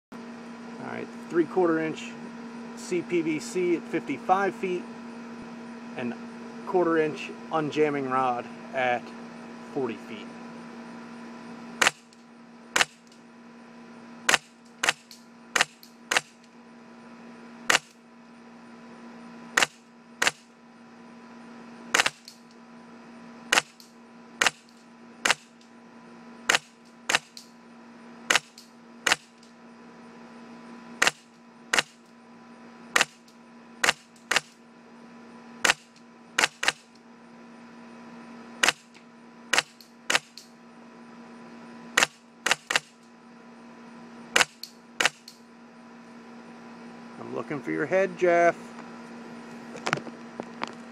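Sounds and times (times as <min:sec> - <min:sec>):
steady low hum: 0:00.1 - 0:50.9
airsoft gun shots: 0:11.8 - 0:12.1, 0:12.8 - 0:13.0, 0:14.3 - 0:16.4, 0:17.7 - 0:17.9, 0:19.6 - 0:20.5, 0:21.9 - 0:22.3, 0:23.5 - 0:25.5, 0:26.5 - 0:27.4, 0:28.3 - 0:29.4, 0:31.0 - 0:32.0, 0:33.0 - 0:33.2, 0:33.8 - 0:34.6, 0:35.6 - 0:36.9, 0:38.6 - 0:38.9, 0:39.5 - 0:40.4, 0:42.0 - 0:43.0, 0:44.4 - 0:45.3.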